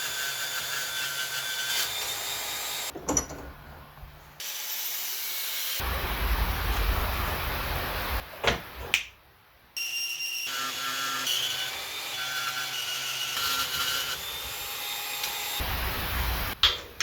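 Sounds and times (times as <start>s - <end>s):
power tool on steel: 9.8s - 16.6s.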